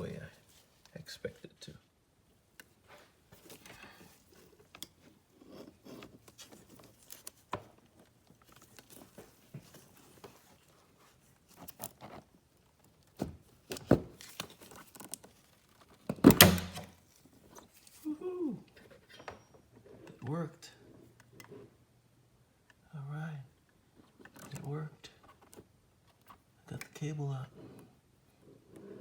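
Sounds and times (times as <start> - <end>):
rustling and scraping: 2.7 - 18.1, 23.8 - 29.0
cable scraping and rubbing: 27.4 - 29.0.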